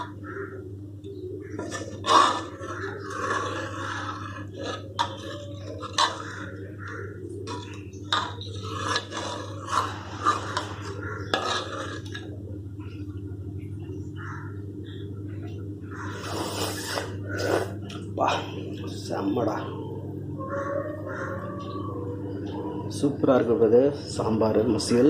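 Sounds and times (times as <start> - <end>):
steady low hum: 0.0 - 25.0
metal utensil scraping metal dish: 1.6 - 6.6, 7.4 - 12.3.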